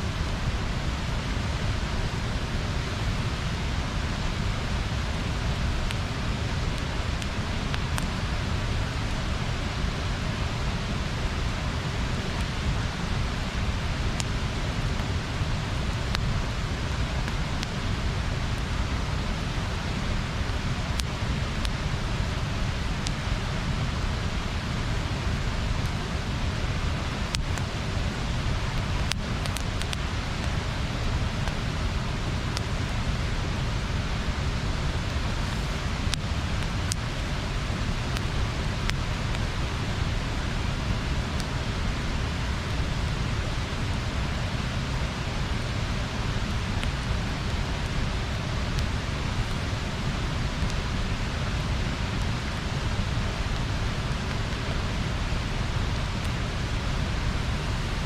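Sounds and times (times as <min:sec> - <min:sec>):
faint sharp ticks: 0:28.8 - 0:30.6.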